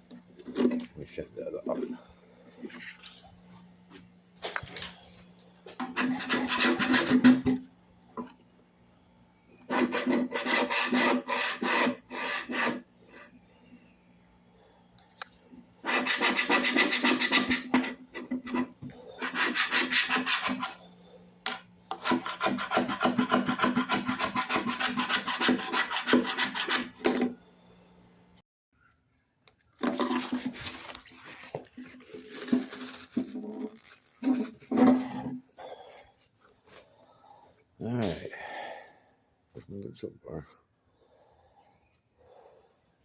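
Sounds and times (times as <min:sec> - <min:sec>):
sandpaper rubbing on wood: 0:09.7 - 0:12.8, 0:15.9 - 0:17.7, 0:19.2 - 0:20.7, 0:22.0 - 0:27.0.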